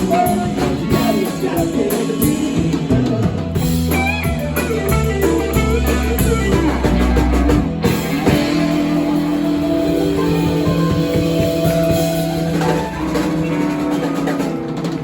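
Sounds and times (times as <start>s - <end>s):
bass line: 0.0s - 15.0s
live rock band playing: 0.0s - 15.0s
electric guitar bending notes: 3.6s - 15.0s.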